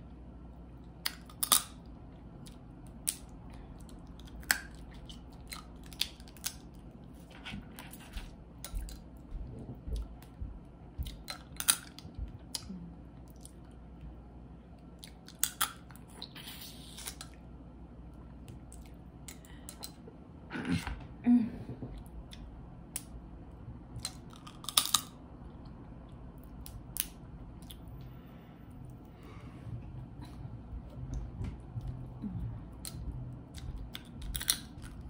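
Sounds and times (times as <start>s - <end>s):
shells cracking and snapping: 1.0s - 1.9s, 2.5s - 6.8s, 11.1s - 12.7s, 15.1s - 16.0s, 24.0s - 25.2s, 26.4s - 27.8s, 33.9s - 35.0s
chewing: 2.4s - 10.4s.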